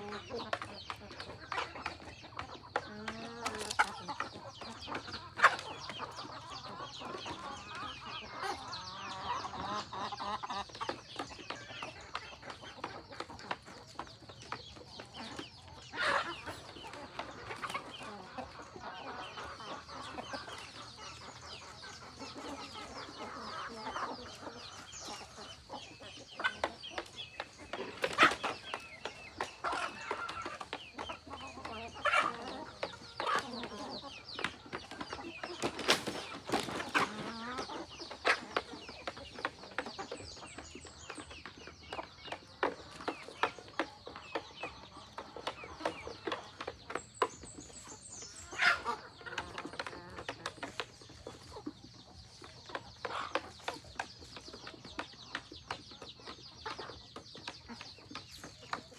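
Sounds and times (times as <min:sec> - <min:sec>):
chickens clucking: 0:00.0 - 0:58.9.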